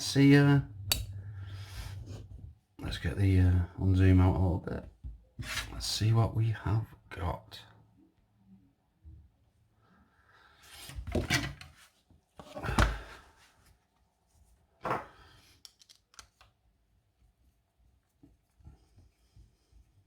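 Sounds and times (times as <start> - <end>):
hard objects rubbing and scraping: 0.7 - 2.6
small clicks: 15.6 - 16.5.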